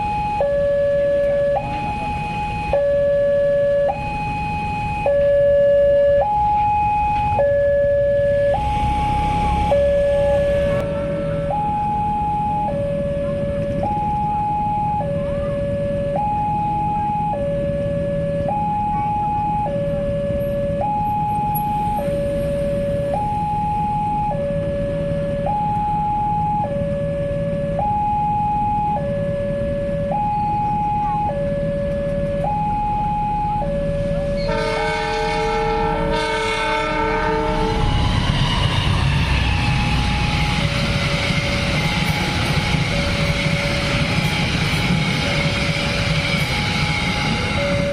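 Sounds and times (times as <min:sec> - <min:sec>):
level-crossing two-tone siren: 0:00.0 - 0:47.9
passing train rumble: 0:00.0 - 0:47.9
train horn chord: 0:34.0 - 0:40.9.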